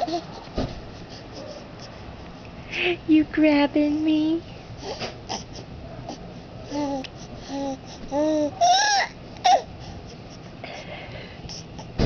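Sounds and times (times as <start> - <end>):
baby cooing: 6.1 - 9.7.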